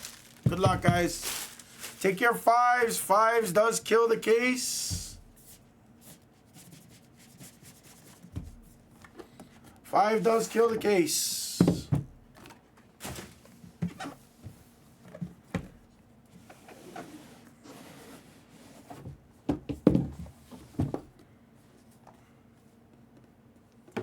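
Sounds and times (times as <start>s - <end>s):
package being handled and opened: 0.0s - 2.2s.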